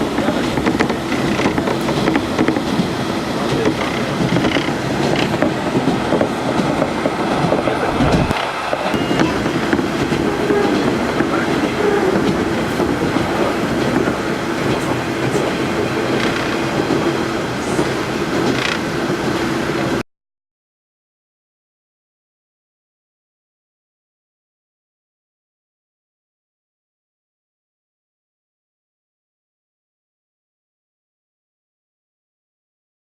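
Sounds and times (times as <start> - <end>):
diesel railcar engine drone: 0.0 - 20.0
wheels rumbling on rails: 0.0 - 20.0
low thud: 7.8 - 8.4.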